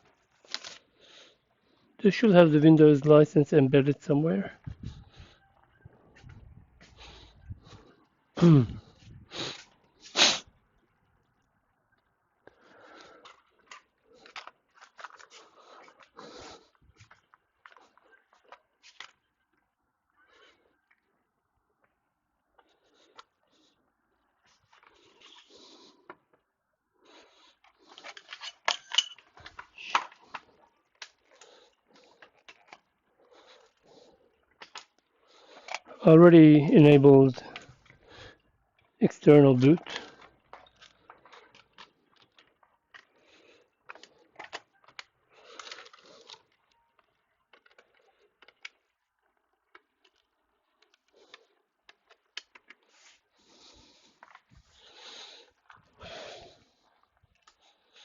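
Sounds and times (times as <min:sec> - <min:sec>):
person's falling vocal sound: 0:08.4 - 0:08.8.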